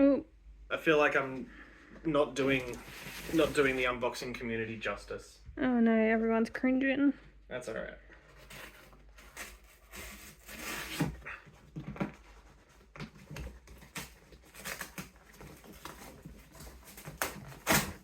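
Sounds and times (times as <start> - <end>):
packaging rustling and scraping: 2.4 - 4.0, 8.3 - 18.0.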